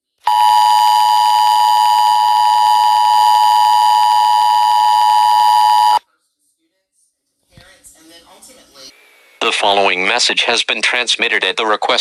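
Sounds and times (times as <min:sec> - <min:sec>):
electronic alarm tone: 0:00.3 - 0:06.0.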